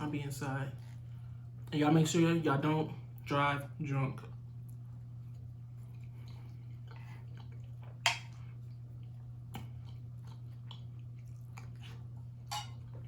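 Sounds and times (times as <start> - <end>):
low electrical hum: 0.0 - 13.0
person chewing: 4.7 - 13.0.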